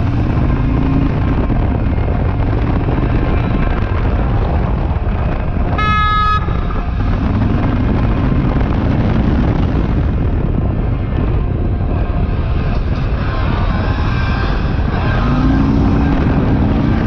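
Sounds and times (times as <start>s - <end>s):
vehicle engine rumble: 0.0s - 17.0s
wind: 0.0s - 17.0s
vehicle horn beep: 5.7s - 6.8s.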